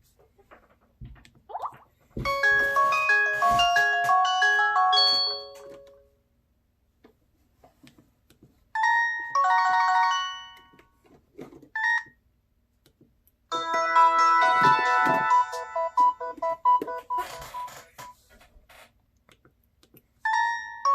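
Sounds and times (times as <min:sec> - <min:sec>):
phone ringtone melodies: 0:02.2 - 0:06.0, 0:08.8 - 0:10.8, 0:13.5 - 0:18.1, 0:20.2 - 0:20.9.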